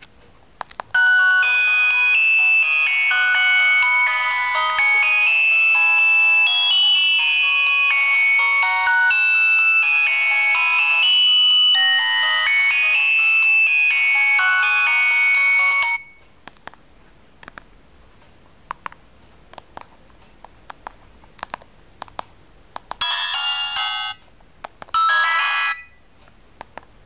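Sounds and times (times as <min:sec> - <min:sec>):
polyphonic phone ringtone: 0:01.0 - 0:16.2, 0:23.0 - 0:24.3, 0:25.0 - 0:26.0.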